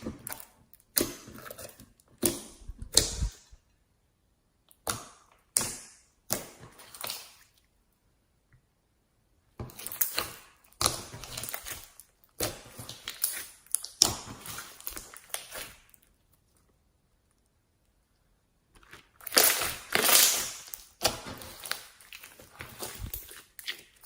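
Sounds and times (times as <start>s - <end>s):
slime being squeezed crackling: 9.7s - 16.0s, 18.8s - 24.0s.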